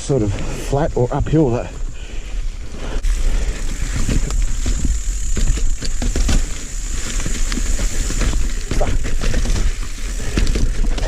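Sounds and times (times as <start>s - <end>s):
bike tyres rumbling on trail: 0.0s - 11.0s
bike clicks and rattles: 2.8s - 11.0s.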